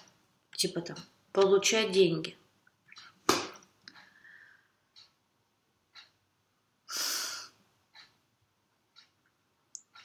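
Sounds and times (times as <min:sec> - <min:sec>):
person breathing in: 0:04.0 - 0:04.8, 0:06.9 - 0:07.6
person breathing out sharply: 0:06.9 - 0:07.6.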